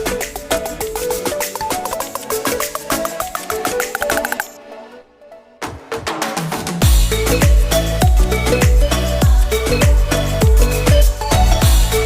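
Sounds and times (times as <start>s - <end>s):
upbeat electronic music: 0.0s - 5.7s.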